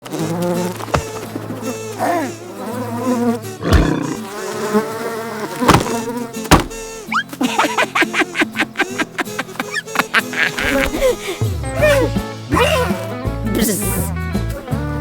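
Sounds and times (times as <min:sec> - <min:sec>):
cartoon bee buzzing: 0:00.1 - 0:11.0
quick chirping glides: 0:09.4 - 0:10.0.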